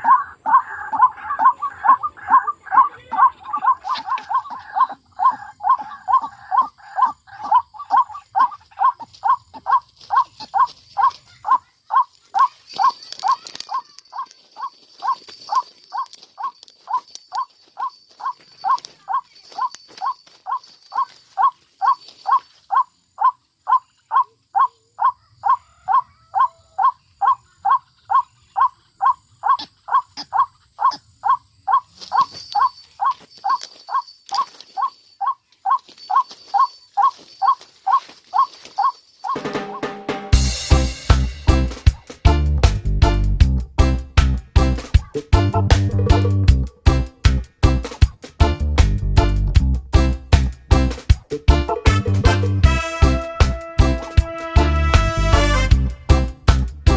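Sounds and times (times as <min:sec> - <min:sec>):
waterhen calling: 0:00.0 - 0:39.9.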